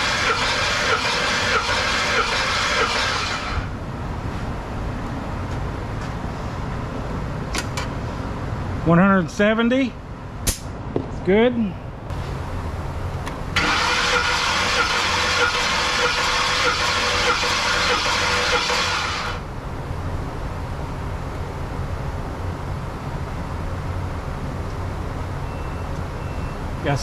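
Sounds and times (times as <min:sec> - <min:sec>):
starter motor cranking engine: 0:00.0 - 0:03.7, 0:12.1 - 0:19.4
low hum: 0:11.9 - 0:26.8.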